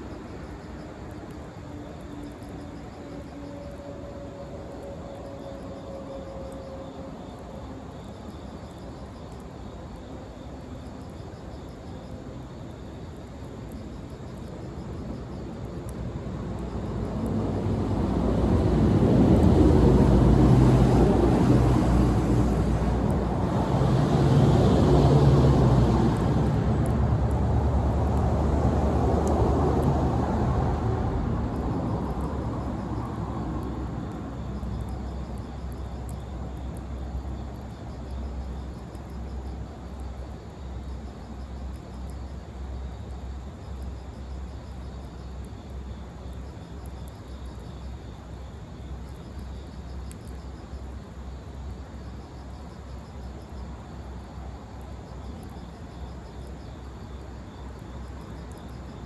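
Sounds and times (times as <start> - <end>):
faint insects chirping: 0.0 - 59.0
passing vehicle engine rumble: 16.4 - 35.8.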